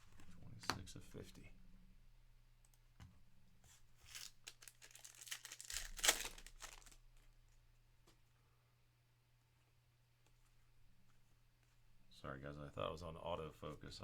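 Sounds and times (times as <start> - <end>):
card pack wrapper tearing and crinkling: 4.0 - 7.3.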